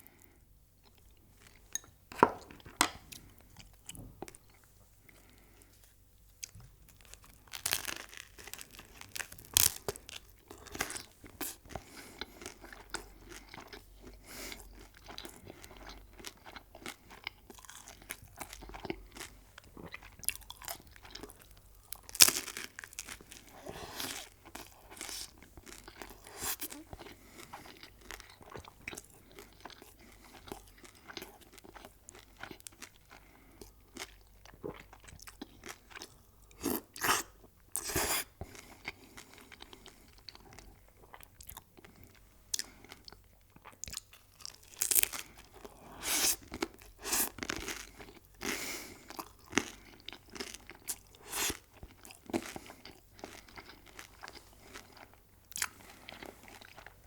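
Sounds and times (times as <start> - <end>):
chewing crunchy food: 0.0 - 57.0.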